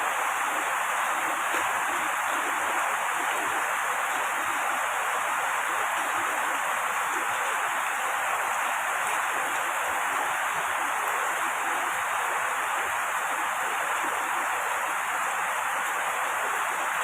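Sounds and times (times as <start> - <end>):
falling rain hiss: 0.0 - 17.0.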